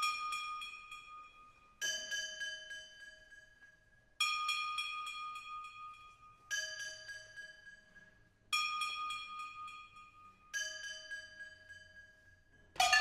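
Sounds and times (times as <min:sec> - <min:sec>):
resonant metal strikes ringing: 0:12.8 - 0:13.0.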